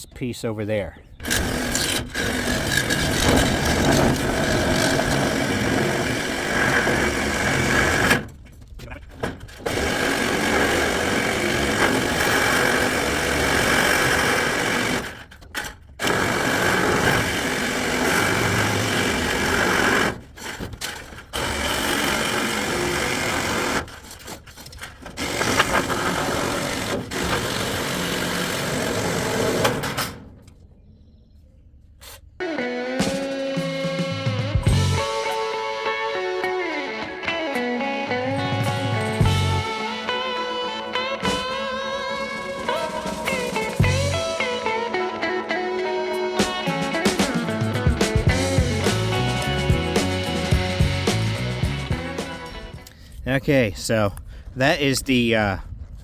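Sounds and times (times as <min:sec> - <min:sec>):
power tool cutting metal panel: 0:01.2 - 0:08.3, 0:09.6 - 0:15.3, 0:16.0 - 0:24.1, 0:25.1 - 0:30.2.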